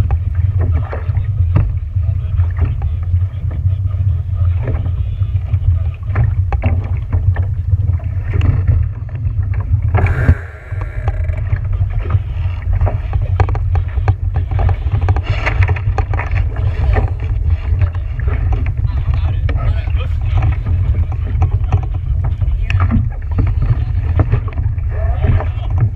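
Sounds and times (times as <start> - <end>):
wind rumble on microphone: 12.8 - 25.9.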